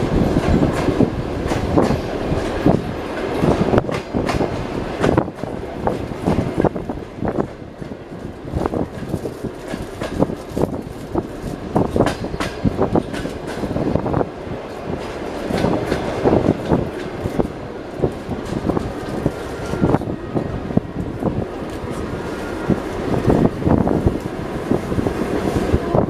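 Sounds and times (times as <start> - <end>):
train rolling rumble: 0.0 - 26.0
train wheels clattering over joints: 0.1 - 13.9.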